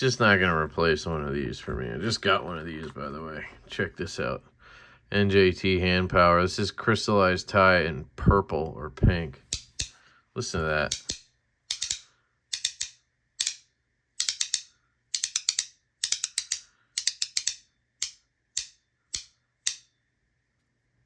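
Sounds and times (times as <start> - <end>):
metal fidget toy clicking: 10.9 - 19.9.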